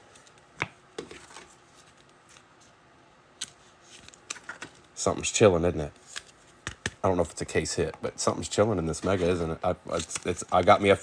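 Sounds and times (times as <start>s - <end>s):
cards flicking and tapping: 6.1s - 7.0s.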